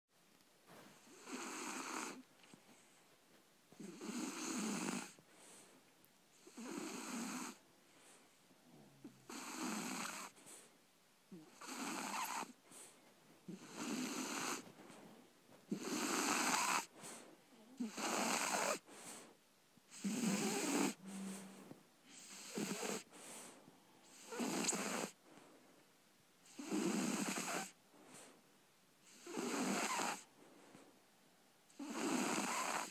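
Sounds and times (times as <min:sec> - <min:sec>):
puppy snoring: 0:00.8 - 0:02.8, 0:03.7 - 0:05.6, 0:06.3 - 0:08.1, 0:08.7 - 0:10.7, 0:11.3 - 0:12.9, 0:13.5 - 0:15.0, 0:15.7 - 0:19.3, 0:19.9 - 0:25.2, 0:26.4 - 0:28.4, 0:29.0 - 0:30.3, 0:31.7 - 0:32.9.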